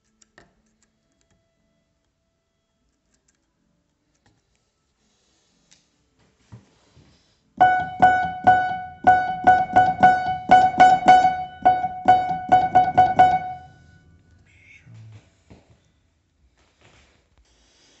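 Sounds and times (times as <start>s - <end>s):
piano key struck repeatedly: 7.6s - 14.0s.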